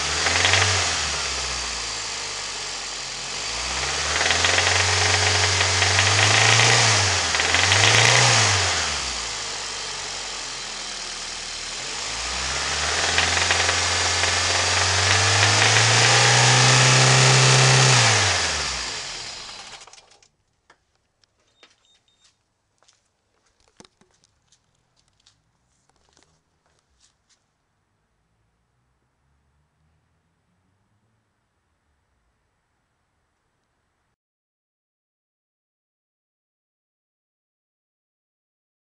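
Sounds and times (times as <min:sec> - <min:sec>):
car engine revving with rod knock: 0:00.0 - 0:02.2, 0:03.2 - 0:20.1.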